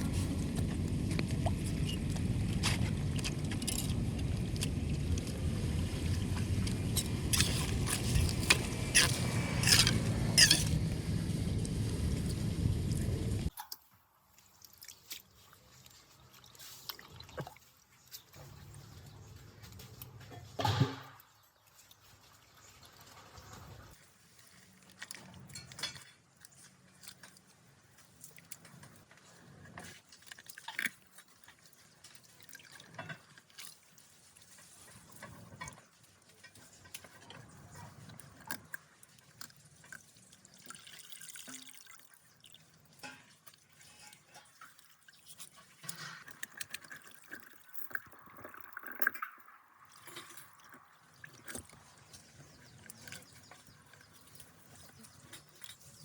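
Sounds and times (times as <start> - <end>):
water dripping and splashing: 0.0 - 13.7, 14.3 - 19.0, 29.8 - 56.0
wet debris clicking and rustling: 0.0 - 20.6, 21.4 - 56.0.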